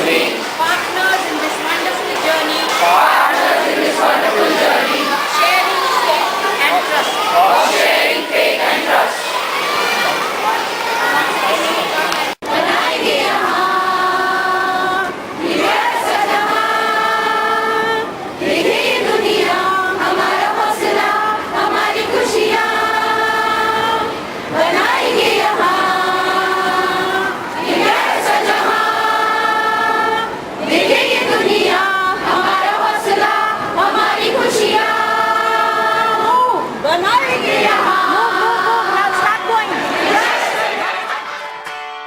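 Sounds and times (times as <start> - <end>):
choir singing held notes: 0.0 - 41.7.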